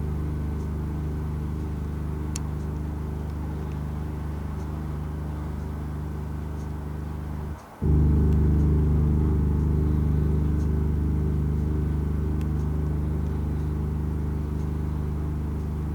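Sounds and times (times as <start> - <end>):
low computer-generated drone: 7.8 - 15.9.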